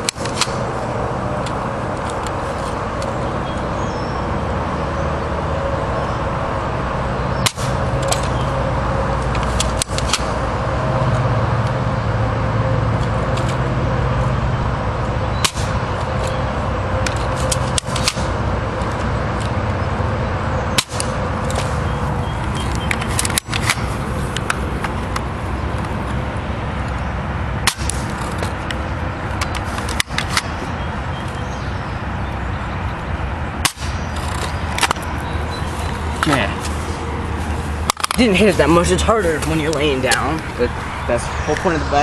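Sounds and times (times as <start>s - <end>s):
steady low rumble: 0.0s - 42.0s
airsoft rifle shots: 15.4s - 15.8s.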